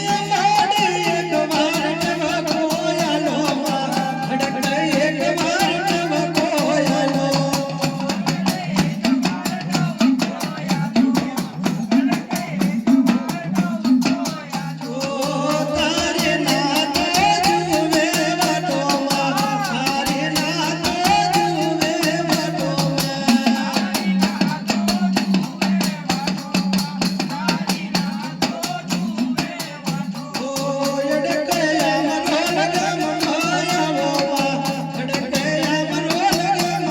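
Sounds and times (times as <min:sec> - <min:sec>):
fast dense drumming: 0:00.0 - 0:36.9
rattling percussion: 0:00.0 - 0:36.9.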